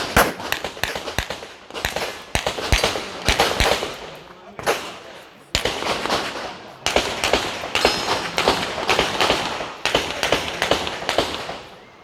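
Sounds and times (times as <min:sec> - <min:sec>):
handgun shots: 0:00.0 - 0:03.8.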